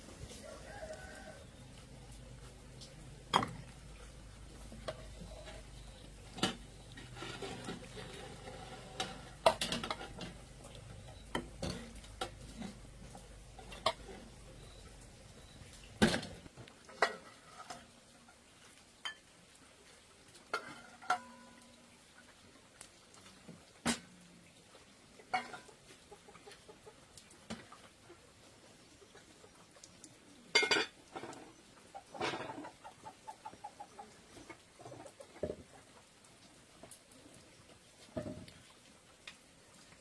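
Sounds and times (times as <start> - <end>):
utensils clinking on pots: 4.8 - 12.8, 30.5 - 31.3.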